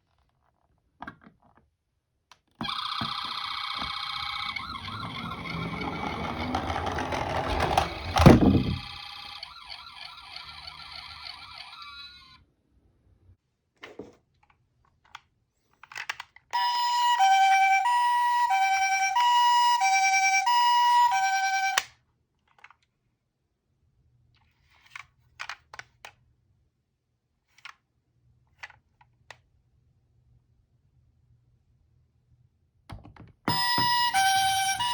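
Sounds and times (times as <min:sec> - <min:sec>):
toy siren two-tone hi-lo call: 0:02.6 - 0:12.4, 0:16.6 - 0:21.9, 0:33.5 - 0:34.9.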